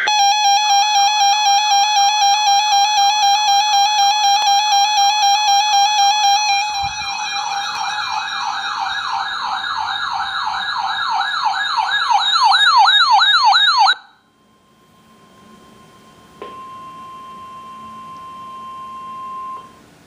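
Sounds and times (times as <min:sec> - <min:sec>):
steady alarm tone: 0:00.0 - 0:11.0
warbling electronic alert siren: 0:00.0 - 0:14.1.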